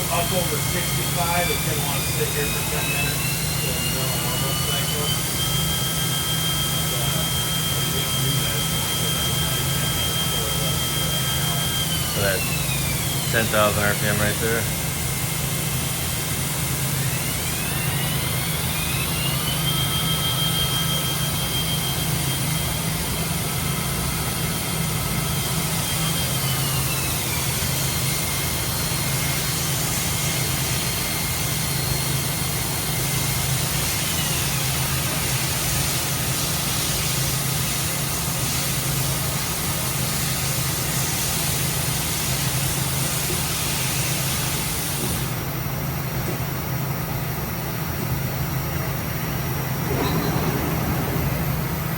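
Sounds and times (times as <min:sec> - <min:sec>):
high spindle whine: 0:00.0 - 0:14.8, 0:49.2 - 0:51.9
steady machine hum and hiss: 0:00.0 - 0:51.9.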